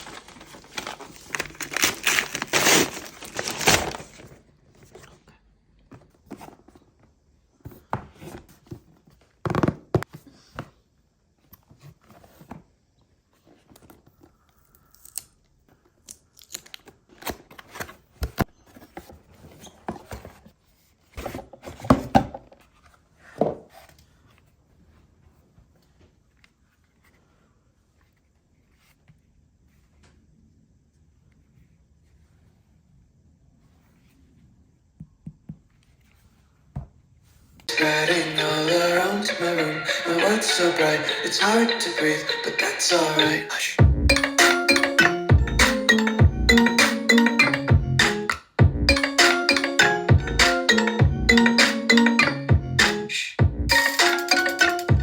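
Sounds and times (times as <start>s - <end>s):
packaging tearing and crinkling: 0.0s - 4.4s.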